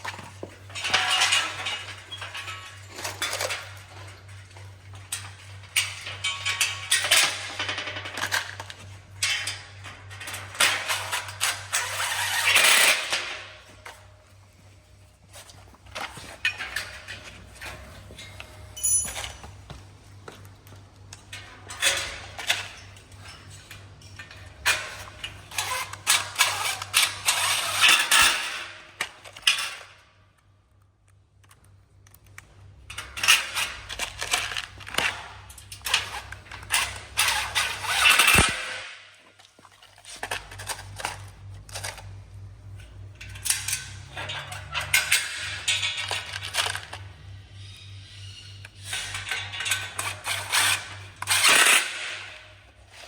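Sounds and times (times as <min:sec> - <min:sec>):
metal parts clattering: 0:00.7 - 0:04.4, 0:43.2 - 0:53.0.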